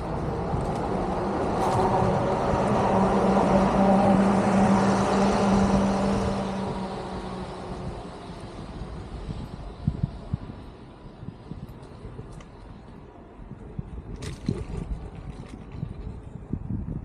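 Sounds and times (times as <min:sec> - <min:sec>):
motor vehicle passing by: 0:00.0 - 0:09.4.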